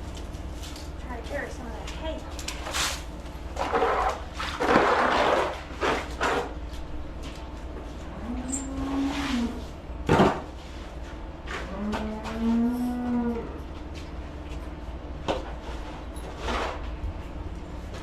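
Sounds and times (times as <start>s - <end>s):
cows mooing: 8.0s - 9.6s, 11.6s - 13.6s.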